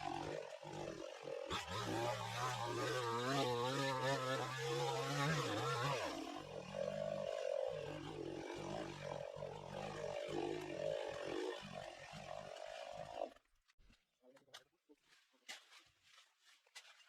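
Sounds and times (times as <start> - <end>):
chainsaw revving: 0.0 - 13.4.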